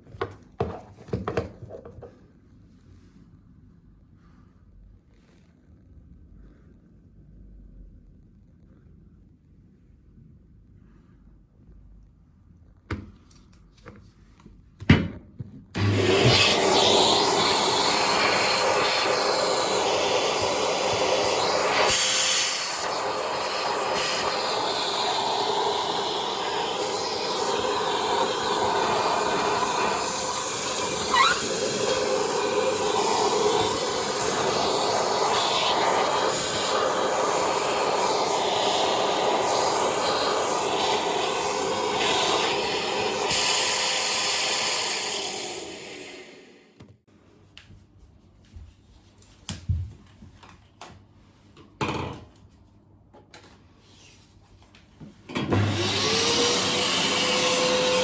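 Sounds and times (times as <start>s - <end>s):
vacuum cleaner running: 15.8s - 46.8s, 55.3s - 58.0s.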